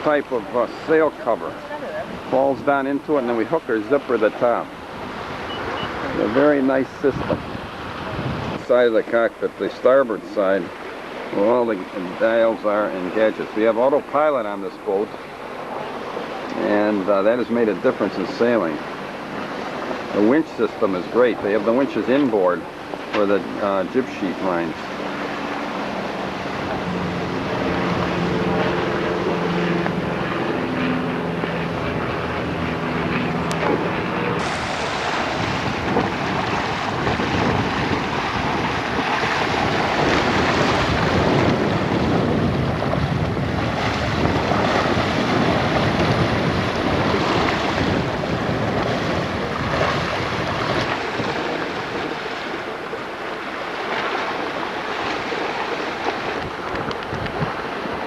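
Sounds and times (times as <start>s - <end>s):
wind buffeting microphone: 0.0s - 9.6s, 10.2s - 58.0s
steady humming tones: 0.0s - 58.0s
water rushing along hull: 0.0s - 58.0s.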